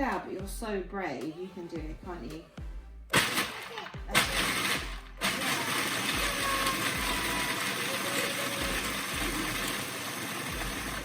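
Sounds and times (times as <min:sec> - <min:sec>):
blender grinding: 0:03.2 - 0:11.0.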